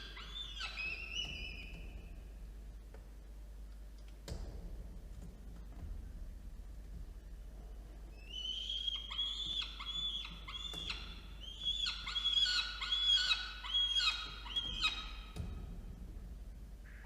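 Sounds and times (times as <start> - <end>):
falcon calling: 0.0 - 2.0, 8.2 - 15.4.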